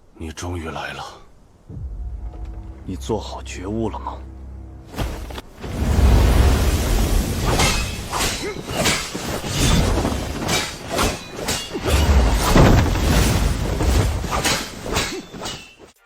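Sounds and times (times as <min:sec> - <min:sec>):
deep heavy thuds: 0:01.7 - 0:07.5.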